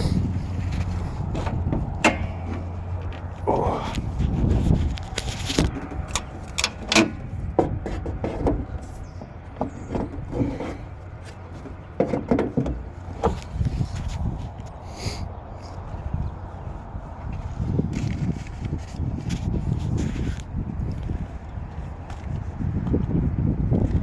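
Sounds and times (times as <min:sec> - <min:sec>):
low rumble: 0:00.0 - 0:12.0
footsteps and handling noise: 0:00.2 - 0:14.8, 0:15.7 - 0:24.0.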